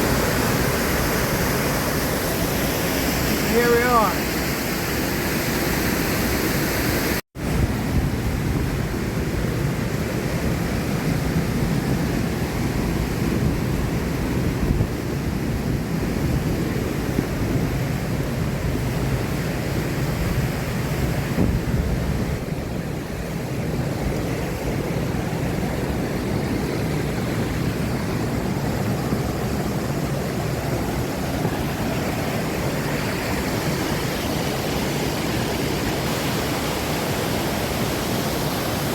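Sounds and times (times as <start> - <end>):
ocean surf rushing: 0.0 - 38.9
waterfall: 0.0 - 38.9
wind on microphone: 7.4 - 36.1.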